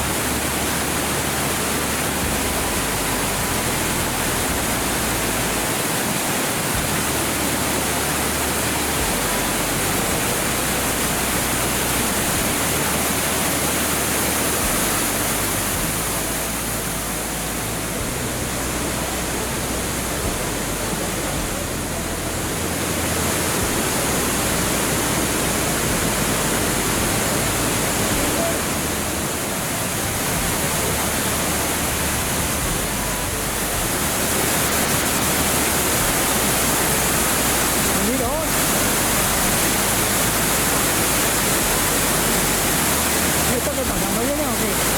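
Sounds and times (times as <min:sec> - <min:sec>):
waterfall rushing: 0:00.0 - 0:44.9.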